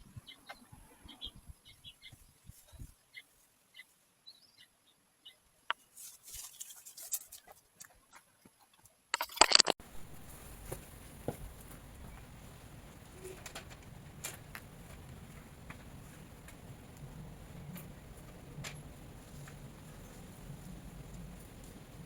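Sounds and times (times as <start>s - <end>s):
small bird chirping: 0.2s - 6.0s
steady hiss: 9.8s - 22.0s.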